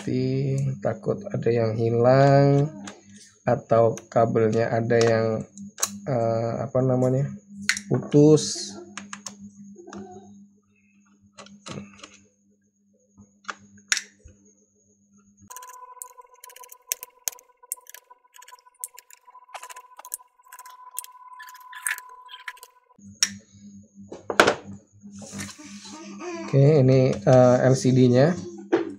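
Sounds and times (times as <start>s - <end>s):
faint steady tone: 14.6s - 24.0s.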